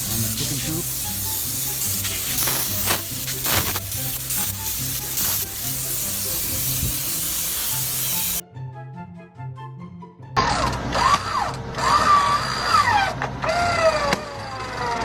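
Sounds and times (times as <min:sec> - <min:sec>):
spray-foam gun hissing: 0:00.0 - 0:08.4
light background music: 0:00.0 - 0:11.9.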